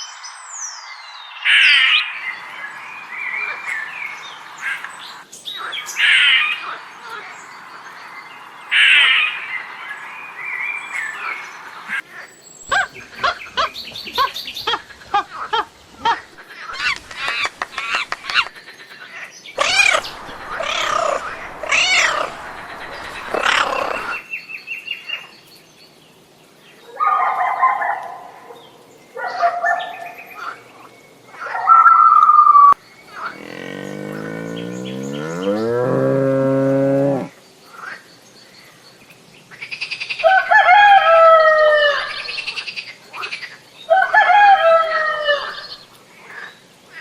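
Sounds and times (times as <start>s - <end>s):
farm animal calls: 12.6s - 18.6s, 19.6s - 24.2s, 33.1s - 37.3s.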